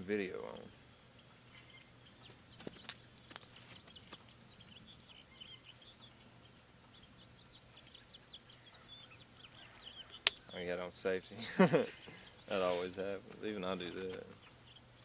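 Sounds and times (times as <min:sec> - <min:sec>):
small birds chirping: 0:00.0 - 0:15.0.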